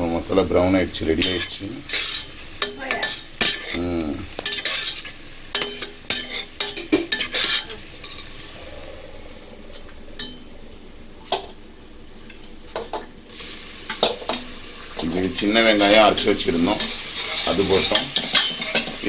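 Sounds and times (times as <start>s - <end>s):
food sizzling in a pan: 0.0s - 19.0s
spoon scraping pan: 1.2s - 8.6s, 12.4s - 19.0s.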